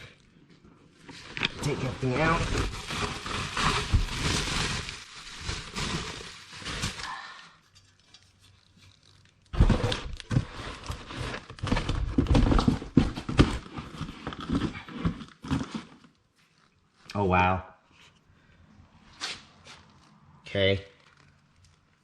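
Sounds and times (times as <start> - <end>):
packing material rustling: 1.0 - 16.8.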